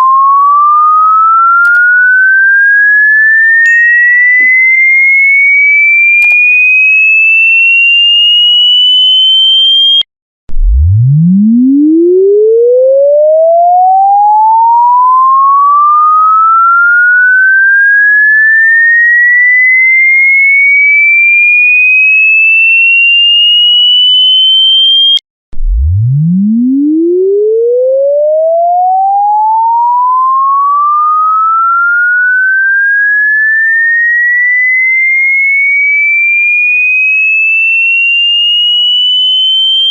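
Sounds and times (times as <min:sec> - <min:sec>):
electronic tone sweeping upward: 0:09.6 - 0:17.8, 0:24.8 - 0:34.4.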